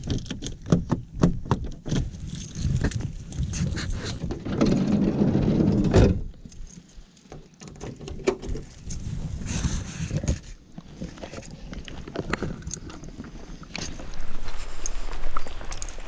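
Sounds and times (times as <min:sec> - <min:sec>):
gear rattling and rustling: 0:01.9 - 0:04.9, 0:13.8 - 0:16.0.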